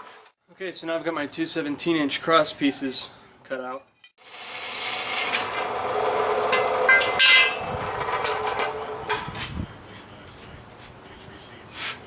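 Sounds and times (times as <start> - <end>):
metal scraping: 3.7 - 9.6
sharp metal knocks: 6.5 - 9.2.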